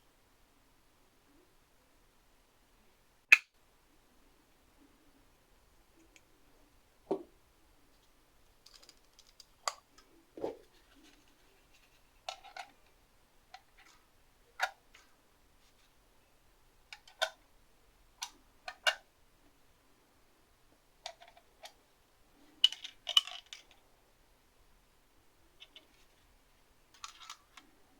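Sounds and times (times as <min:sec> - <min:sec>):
small hard objects clicking: 0:08.6 - 0:10.1.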